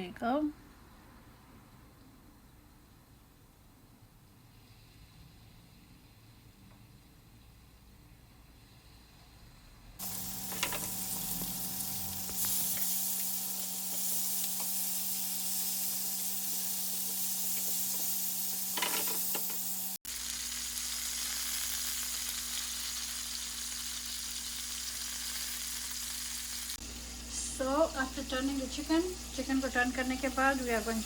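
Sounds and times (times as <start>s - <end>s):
chicken sizzling in oil: 8.5s - 31.0s.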